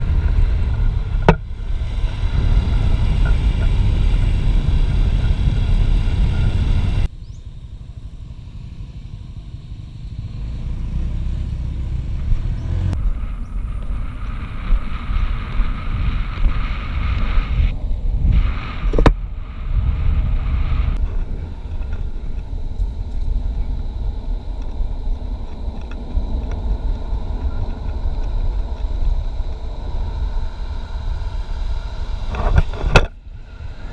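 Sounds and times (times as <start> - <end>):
skateboard wheels rolling on asphalt: 0.0 - 7.4, 10.0 - 33.9
rushing wind: 0.0 - 9.4, 10.0 - 33.9.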